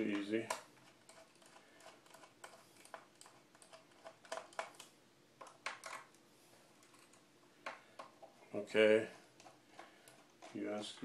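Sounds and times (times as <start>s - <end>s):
screwdriver clicking on plastic: 0.1s - 6.1s.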